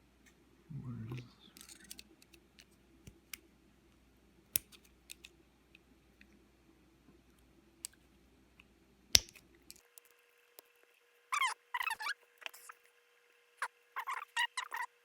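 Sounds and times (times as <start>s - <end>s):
low background hum: 0.0s - 15.0s
metal lock parts clicking: 1.6s - 2.7s, 4.6s - 5.3s.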